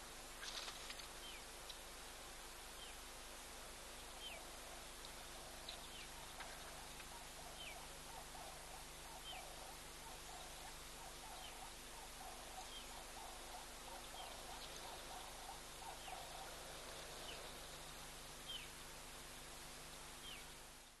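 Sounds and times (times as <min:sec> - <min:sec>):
faint low hum: 0:00.0 - 0:21.0
steady hiss: 0:00.0 - 0:21.0
lower chattering bird calls: 0:03.8 - 0:21.0.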